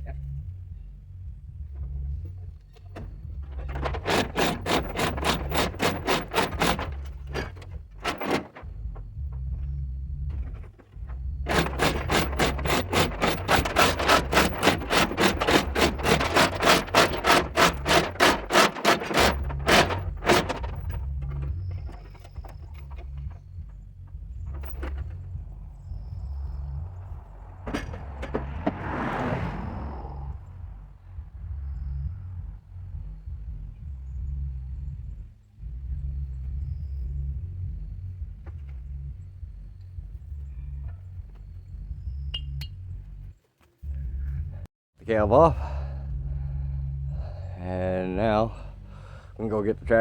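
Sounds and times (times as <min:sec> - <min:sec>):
steady low rumble: 0:00.0 - 0:04.0, 0:08.6 - 0:18.2, 0:19.3 - 0:50.0
hoist ratchet clicking: 0:03.0 - 0:08.7, 0:11.5 - 0:23.3.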